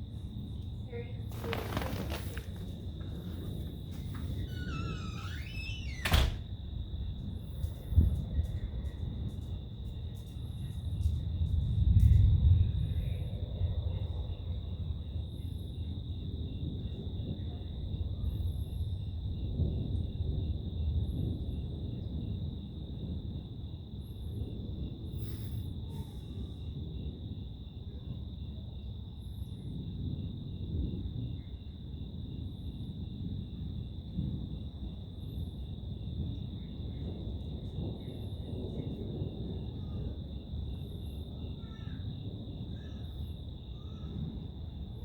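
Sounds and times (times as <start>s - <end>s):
crickets chirping: 0.0s - 45.0s
soft insect chirp: 25.1s - 45.0s
insects trilling: 34.6s - 45.0s.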